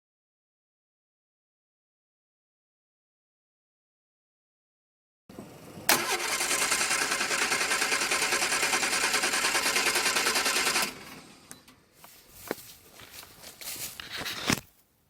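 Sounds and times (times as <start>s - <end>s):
engine cranking on starter motor: 5.8s - 11.8s.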